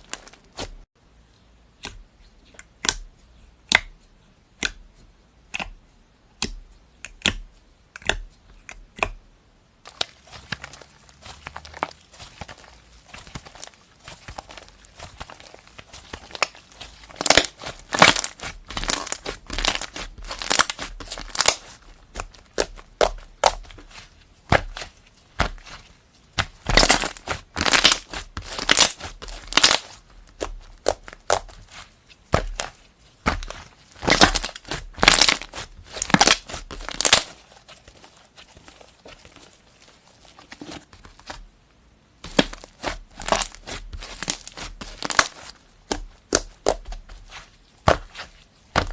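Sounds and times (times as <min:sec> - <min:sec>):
slime crackling pops: 0:11.6 - 0:25.8, 0:26.4 - 0:31.8, 0:32.4 - 0:37.3.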